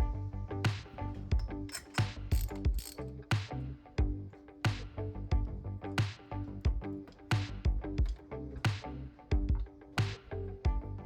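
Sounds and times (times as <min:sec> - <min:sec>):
background music with steady beat: 0:00.0 - 0:11.0
ratchet wrench clicking: 0:01.7 - 0:03.2.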